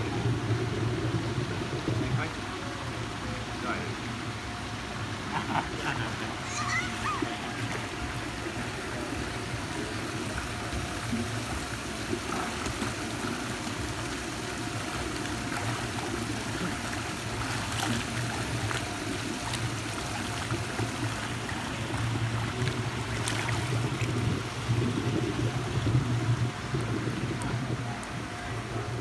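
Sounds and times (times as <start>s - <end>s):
low steady hum: 0.0s - 29.0s
water trickling: 6.3s - 29.0s
light water splashes: 6.9s - 29.0s.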